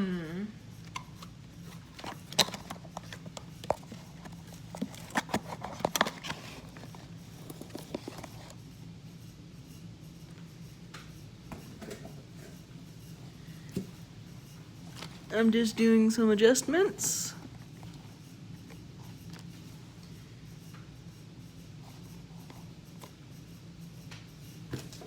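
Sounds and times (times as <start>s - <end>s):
low steady hum: 0.0s - 25.0s
boxes handled with clicks and taps: 0.8s - 8.6s.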